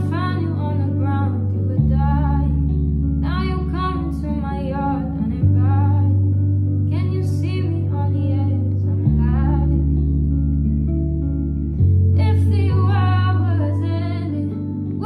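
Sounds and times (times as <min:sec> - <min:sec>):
deep sustained bass notes: 0:00.0 - 0:15.0
person singing: 0:12.2 - 0:15.0.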